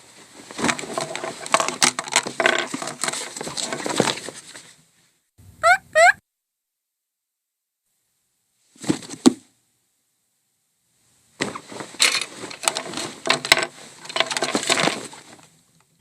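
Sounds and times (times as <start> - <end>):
cartoon clattering and cracking: 0.9 - 4.0, 12.0 - 15.1.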